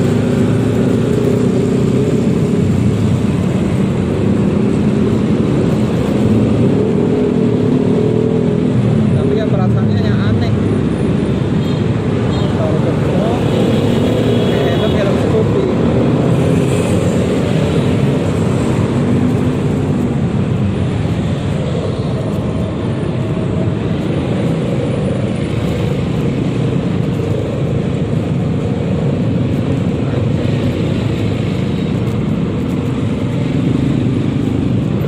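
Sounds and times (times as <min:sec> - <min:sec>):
scooter engine: 0:00.0 - 0:09.1
road traffic: 0:00.0 - 0:35.0.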